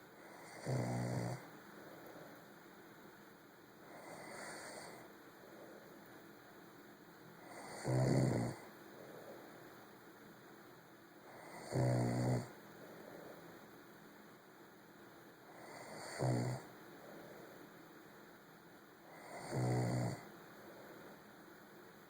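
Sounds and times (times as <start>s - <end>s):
person snoring: 0.3s - 1.4s, 3.9s - 5.0s, 7.4s - 8.7s, 11.3s - 12.5s, 15.5s - 16.7s, 19.1s - 20.2s
soft breathing: 1.3s - 2.8s, 3.8s - 6.4s, 8.5s - 10.0s, 12.5s - 14.2s, 15.4s - 18.1s, 20.2s - 21.9s.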